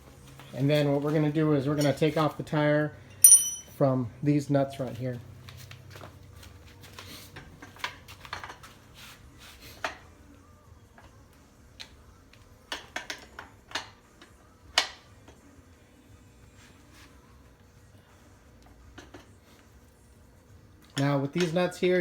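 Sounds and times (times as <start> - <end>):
metal wrenches clinking: 1.7 - 2.2, 3.1 - 3.8.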